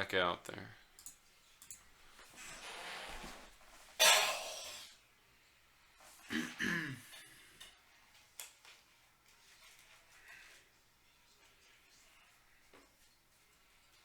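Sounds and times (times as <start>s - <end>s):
person clearing throat: 4.0s - 4.9s, 6.2s - 7.3s.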